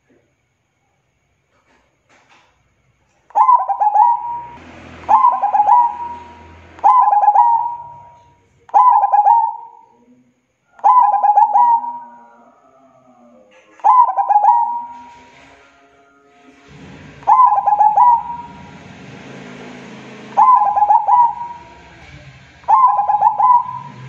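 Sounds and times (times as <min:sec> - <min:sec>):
dove cooing song: 0:03.4 - 0:09.9, 0:10.8 - 0:15.4, 0:16.7 - 0:18.7, 0:20.4 - 0:21.8, 0:22.7 - 0:24.0.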